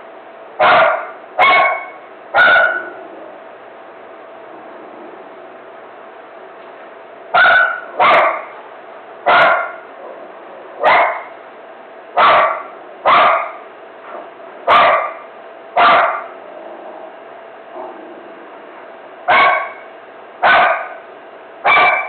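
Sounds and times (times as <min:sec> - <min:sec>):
dog barking: 0:00.6 - 0:03.0, 0:07.4 - 0:08.6, 0:09.3 - 0:09.9, 0:10.8 - 0:11.4, 0:12.2 - 0:13.6, 0:14.7 - 0:16.4, 0:19.3 - 0:21.0, 0:21.6 - 0:22.0.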